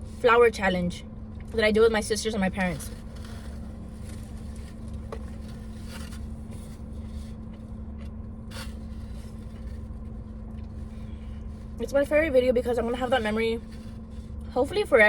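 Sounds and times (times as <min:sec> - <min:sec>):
constant hum: 0:00.0 - 0:15.0
faint rustles or scrapes: 0:02.4 - 0:11.8, 0:12.7 - 0:14.9.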